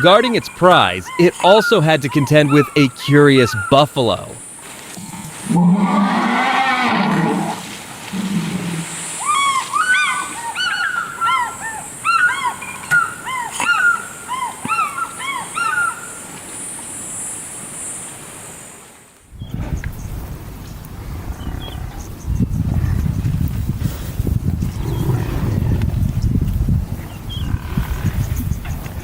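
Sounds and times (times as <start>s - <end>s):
birds calling hoarse cries: 0.0s - 7.6s, 8.2s - 16.3s, 24.6s - 25.8s.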